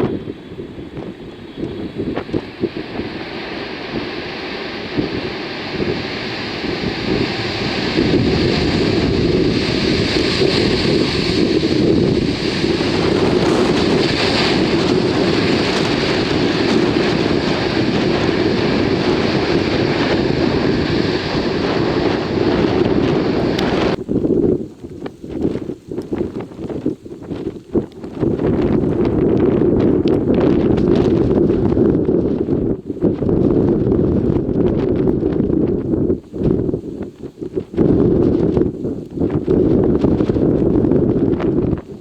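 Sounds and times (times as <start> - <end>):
faint steady whine: 0.0 - 29.1
jet airliner engine noise: 0.0 - 42.0
wind buffeting microphone: 0.0 - 42.0.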